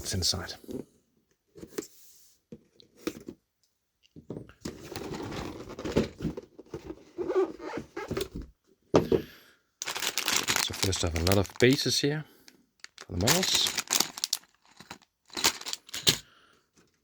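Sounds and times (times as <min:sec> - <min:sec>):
packaging rustling and crinkling: 0:09.8 - 0:12.1, 0:12.8 - 0:17.0.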